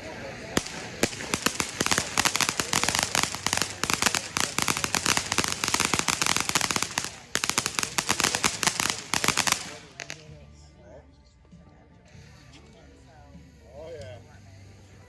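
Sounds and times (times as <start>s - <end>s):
fireworks fountain crackling: 0.0s - 10.4s.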